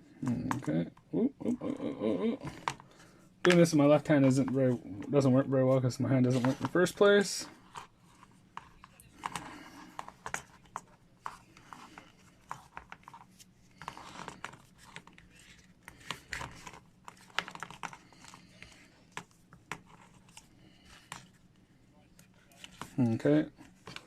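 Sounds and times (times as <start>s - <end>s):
plastic parts clicking and scraping: 7.6s - 21.4s.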